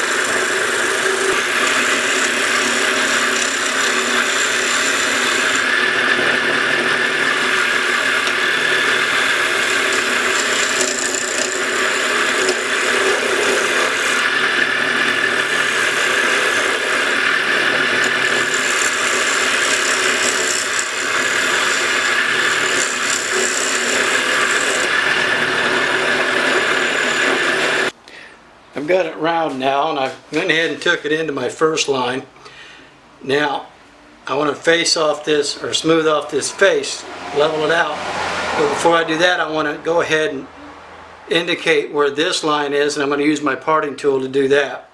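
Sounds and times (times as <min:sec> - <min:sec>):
gouge cutting wood on lathe: 0:00.0 - 0:27.9.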